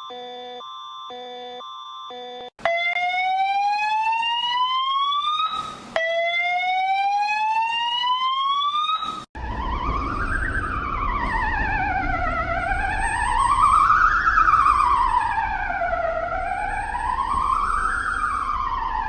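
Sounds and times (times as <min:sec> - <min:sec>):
steady electronic beep tone: 0:00.0 - 0:02.5
warbling siren tone: 0:02.6 - 0:19.0
slow rising electronic sweeps: 0:03.0 - 0:19.0.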